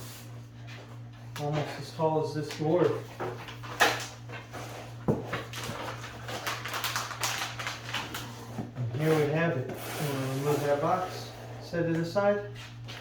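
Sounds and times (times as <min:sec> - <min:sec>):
cardboard scraping and rustling: 0:04.4 - 0:11.4.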